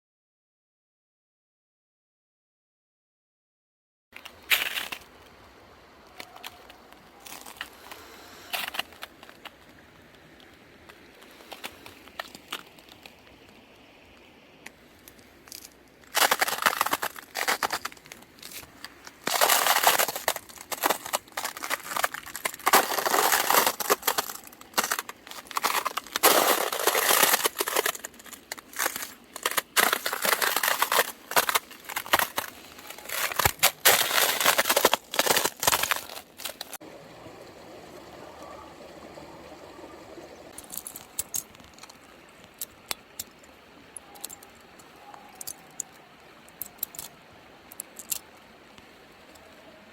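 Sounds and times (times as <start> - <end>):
footsteps crunching on ice: 6.3 - 13.6, 15.0 - 36.8.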